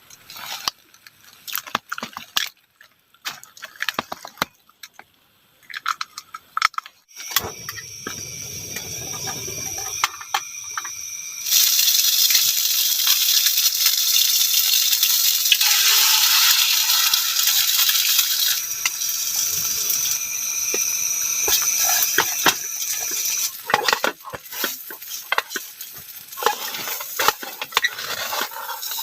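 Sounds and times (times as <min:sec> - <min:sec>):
batter sizzling in a pan: 0:07.2 - 0:29.0
cooking utensils rattling: 0:21.4 - 0:29.0.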